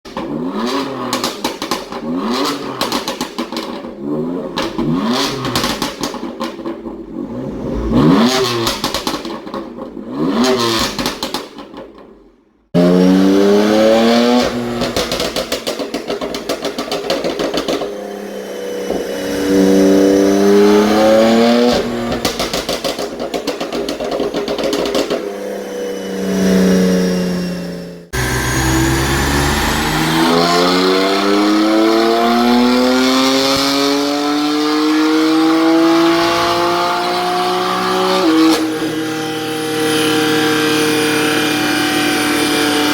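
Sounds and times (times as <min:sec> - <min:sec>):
exhaust popping and crackling: 0:00.1 - 0:10.1, 0:21.6 - 0:25.2
car engine revving: 0:00.2 - 0:11.0, 0:12.8 - 0:15.6, 0:17.4 - 0:23.6, 0:24.3 - 0:42.9.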